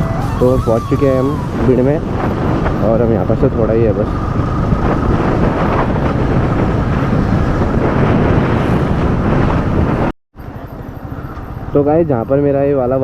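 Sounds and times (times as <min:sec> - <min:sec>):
wind buffeting microphone: 0:00.0 - 0:12.3
motorcycle engine running: 0:01.4 - 0:09.2.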